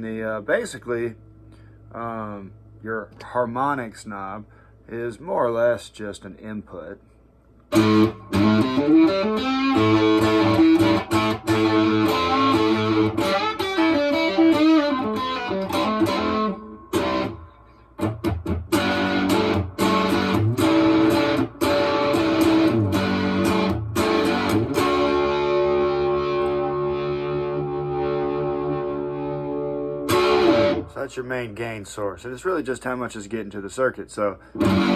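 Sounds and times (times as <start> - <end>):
fuzzy electric guitar: 7.7 - 31.0, 34.5 - 34.9.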